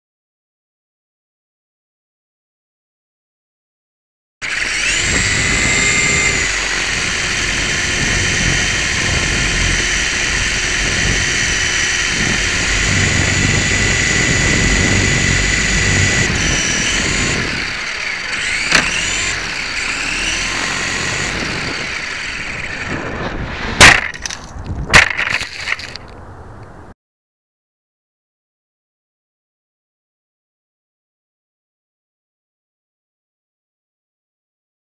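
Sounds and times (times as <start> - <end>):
helicopter crashing: 4.4 - 26.1
toy helicopter rotor whining: 4.4 - 26.2
wind rumbling on microphone: 4.6 - 26.9.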